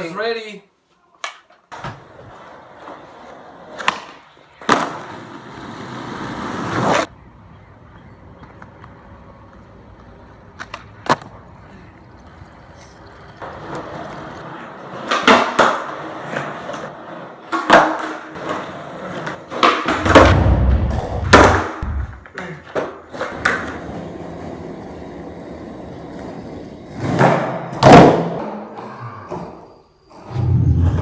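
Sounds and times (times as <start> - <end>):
skateboard wheels rolling on pavement: 1.4 - 28.8, 29.4 - 31.0
skateboard wooden clacks: 21.3 - 24.0.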